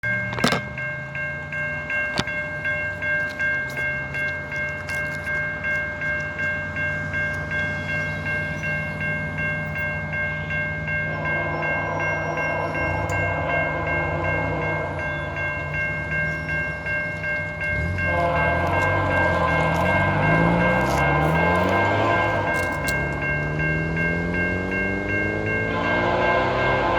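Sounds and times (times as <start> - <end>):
diesel locomotive drone: 0.0 - 26.9
level crossing warning bell: 0.0 - 26.9
locomotive horn: 10.4 - 16.6, 17.5 - 26.9.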